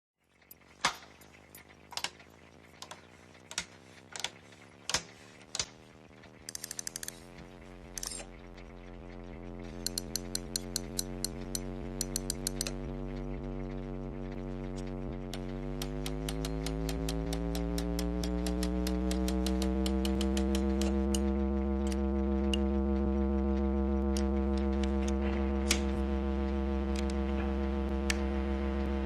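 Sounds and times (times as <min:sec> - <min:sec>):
clockwork ticking: 0:00.4 - 0:27.2
low hum rising in pitch: 0:07.1 - 0:29.0.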